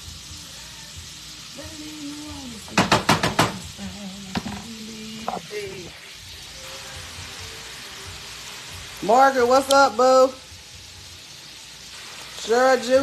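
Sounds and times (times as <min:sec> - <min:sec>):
shrimp sizzling in a frying pan: 0:00.0 - 0:13.0
utensil knocking against pan: 0:02.7 - 0:03.7, 0:04.3 - 0:05.4.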